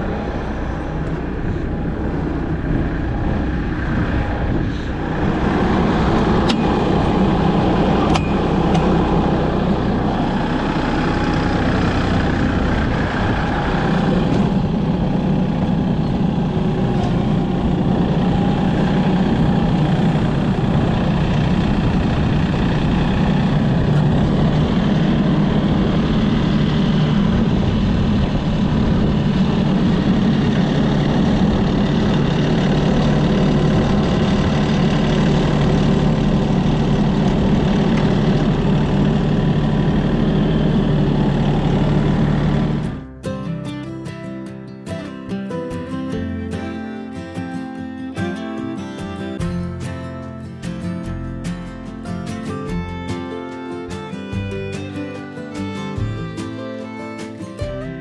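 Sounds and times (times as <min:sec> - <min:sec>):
heavy vehicle engine running: 0:00.0 - 0:43.3, 0:46.1 - 0:58.0.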